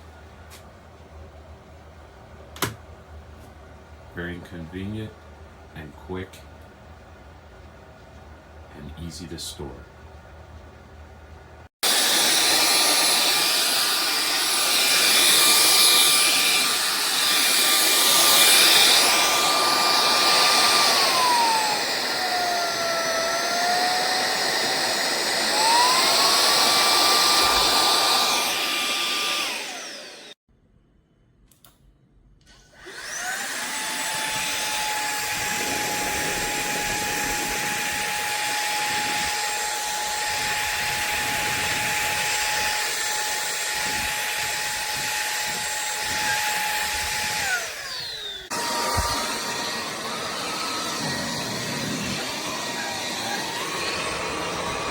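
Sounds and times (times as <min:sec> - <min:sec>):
stick vacuum whining: 0:11.8 - 0:30.4, 0:32.5 - 0:54.9.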